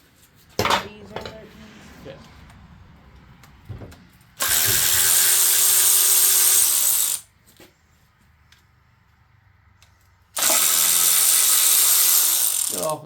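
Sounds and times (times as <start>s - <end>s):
power ratchet spinning bolts: 4.4s - 7.2s, 10.4s - 13.0s.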